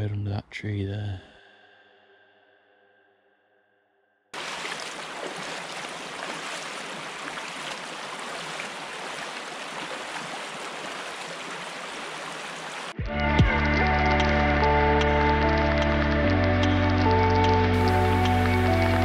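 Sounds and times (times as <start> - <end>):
river water rushing: 4.4 - 13.0
music: 13.0 - 19.0.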